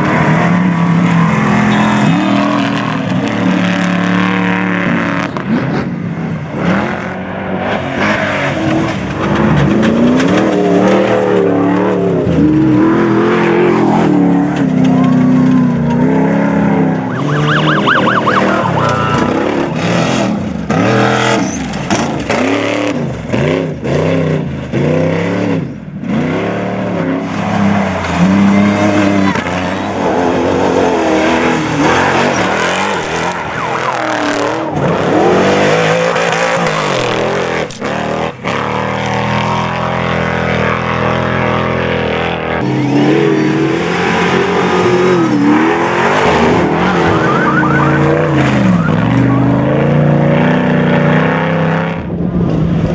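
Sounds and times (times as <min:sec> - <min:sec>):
race vehicle engines revving: 0:00.0 - 0:52.9.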